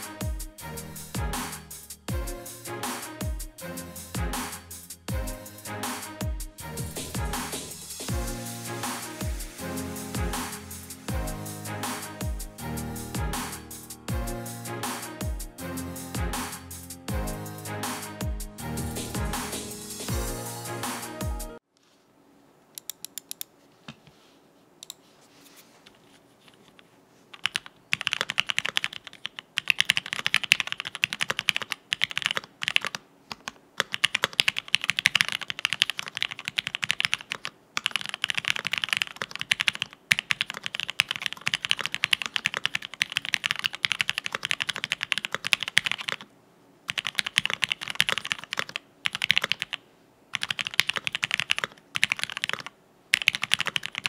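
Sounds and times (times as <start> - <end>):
mechanical keyboard typing: 27.4 - 46.3, 46.9 - 54.0.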